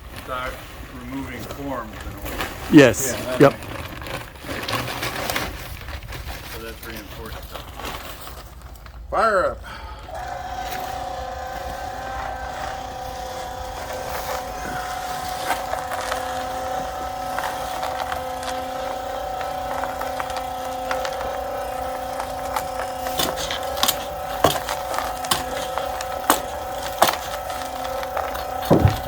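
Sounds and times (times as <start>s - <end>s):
concrete mixer humming: 0.0s - 6.2s, 9.6s - 29.0s
sharp knocks: 28.6s - 29.0s.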